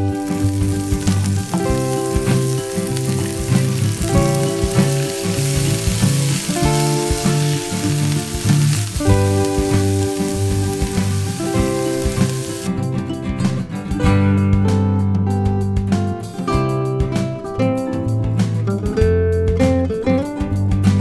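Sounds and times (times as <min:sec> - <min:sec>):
vegetables sizzling in a pan: 0:00.0 - 0:12.7
background music with bass line: 0:00.0 - 0:21.0.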